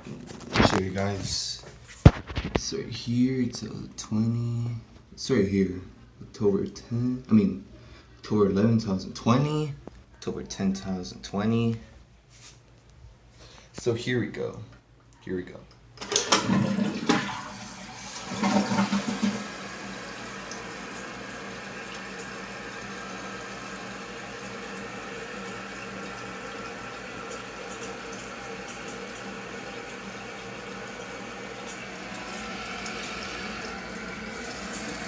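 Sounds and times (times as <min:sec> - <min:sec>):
toilet flushing water rush: 0:16.0 - 0:35.0.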